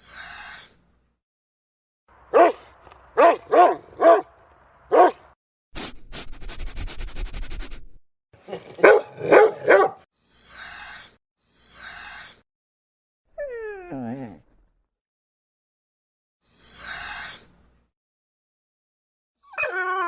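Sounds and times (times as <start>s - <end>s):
dog barking: 2.3s - 4.3s, 4.9s - 5.3s, 8.5s - 10.0s.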